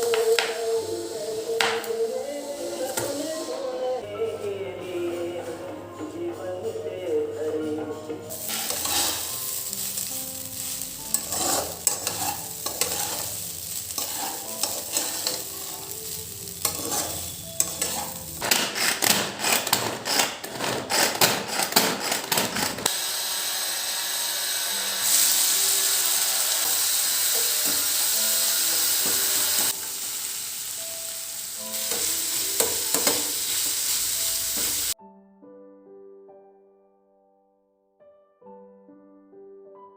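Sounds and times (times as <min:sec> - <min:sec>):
knocks and scraping: 0:17.8 - 0:22.9
steady hiss: 0:25.0 - 0:35.0.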